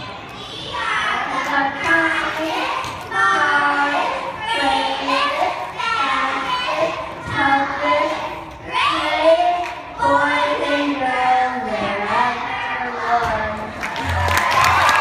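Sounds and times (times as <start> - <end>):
children singing: 0.0 - 13.4.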